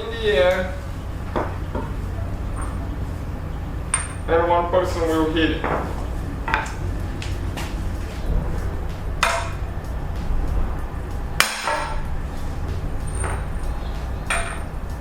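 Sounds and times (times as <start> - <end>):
hammer striking metal: 3.9 - 4.3, 5.6 - 15.0.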